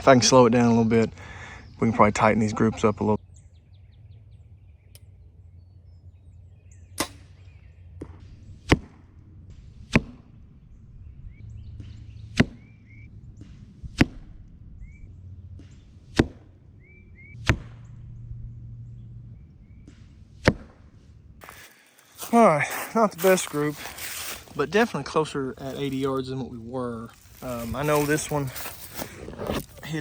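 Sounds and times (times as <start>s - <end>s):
low wind rumble: 0.0s - 30.0s
bird chirps: 0.6s - 8.7s, 10.5s - 13.6s, 14.8s - 16.0s, 16.7s - 20.1s.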